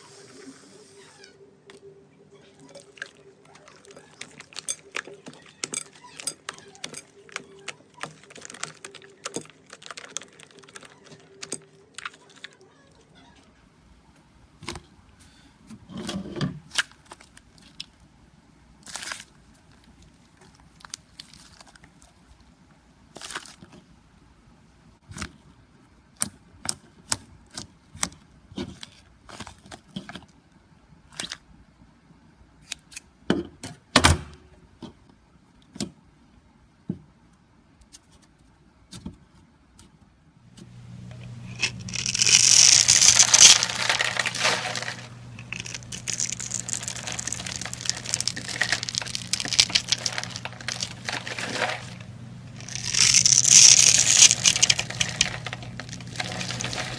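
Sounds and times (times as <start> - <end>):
slime crunching: 7.4 - 12.5, 41.5 - 56.9.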